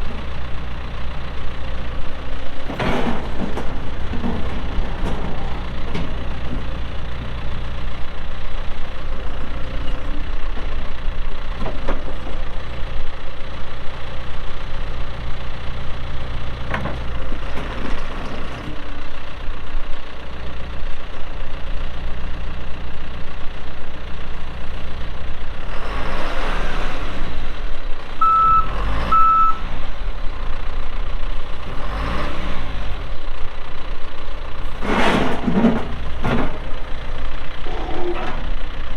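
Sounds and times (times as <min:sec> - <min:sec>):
diesel engine under load: 0:00.0 - 0:38.9
reverse alarm beeping: 0:28.2 - 0:29.7.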